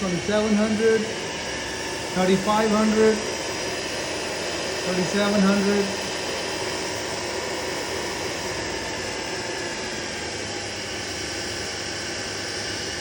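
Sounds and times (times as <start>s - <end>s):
milling machine spindle whirring: 0.0s - 13.0s.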